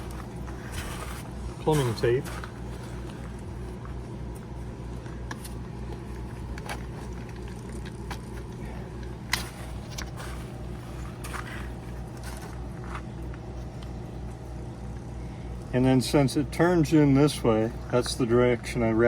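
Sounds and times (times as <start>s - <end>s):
low mechanical hum pulsing: 0.0s - 19.0s.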